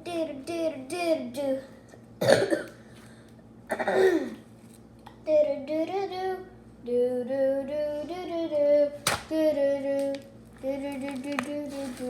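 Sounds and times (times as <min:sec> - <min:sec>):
girl singing: 0:00.0 - 0:01.8, 0:05.2 - 0:12.0.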